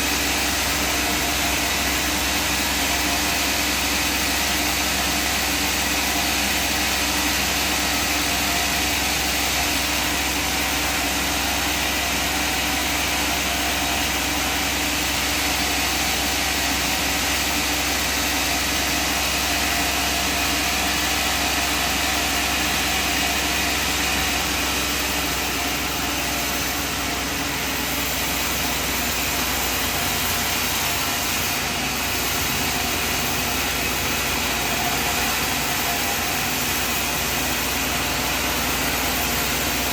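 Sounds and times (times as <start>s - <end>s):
sawmill machinery humming: 0.0s - 39.9s.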